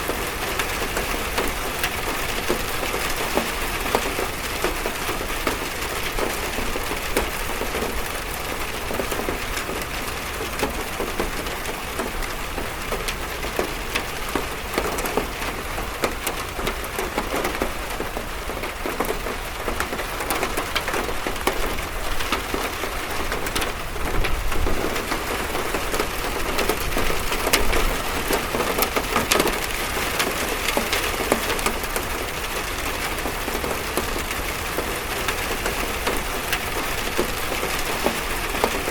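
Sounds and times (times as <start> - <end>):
rain drumming on a metal roof: 0.0 - 38.9.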